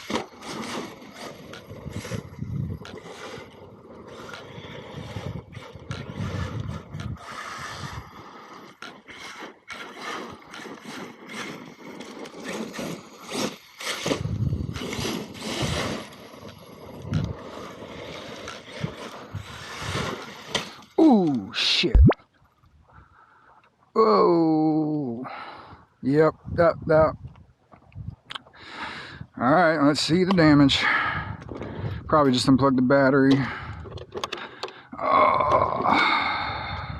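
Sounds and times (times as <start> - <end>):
rc truck motor: 0.0 - 21.0
tyres scrabbling on gravel: 0.0 - 21.5.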